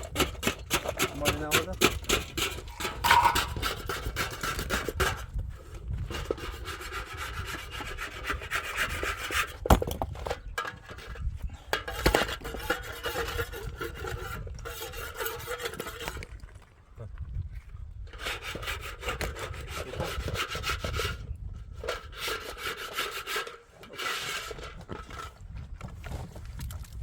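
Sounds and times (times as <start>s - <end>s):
rapid scraping strokes: 2.4s - 5.1s.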